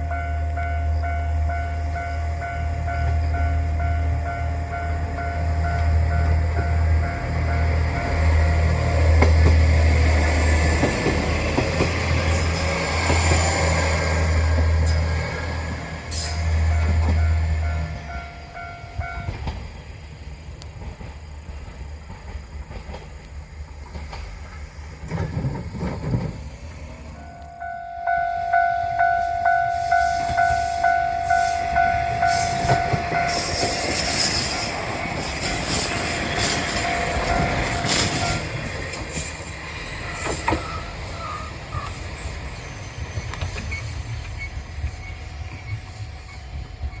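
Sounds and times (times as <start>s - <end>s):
level-crossing warning bell ringing: 0.0s - 9.2s, 13.2s - 19.5s, 27.1s - 47.0s
train rumble and wheel clatter: 0.0s - 47.0s.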